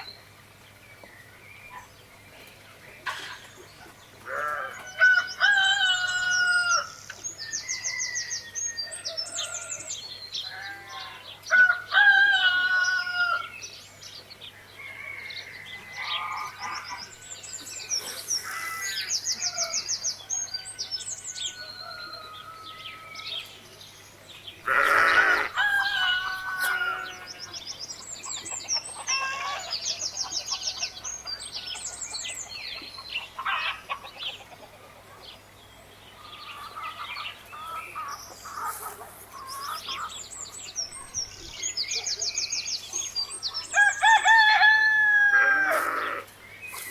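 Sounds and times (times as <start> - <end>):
small birds chirping: 13.3 - 44.6, 45.6 - 46.9
chickens clucking: 28.0 - 35.4, 36.2 - 40.3.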